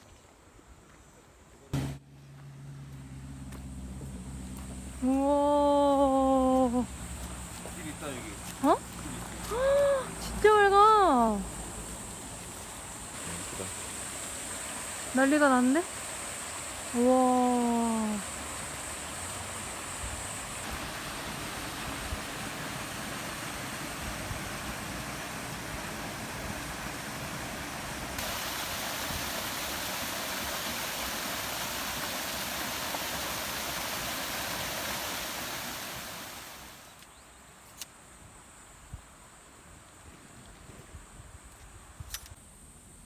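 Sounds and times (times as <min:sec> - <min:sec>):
stream running water: 0:04.4 - 0:37.1.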